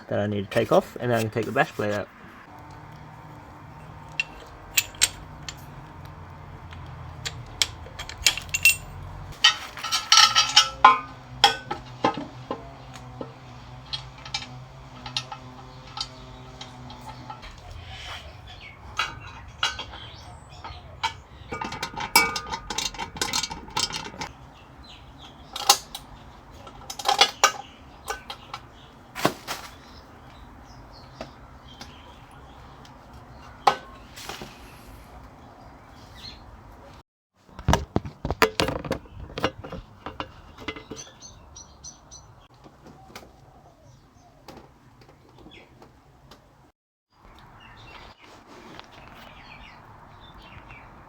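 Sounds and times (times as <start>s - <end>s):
metal tools clanking: 0.4s - 32.3s, 33.3s - 34.5s, 37.6s - 41.7s.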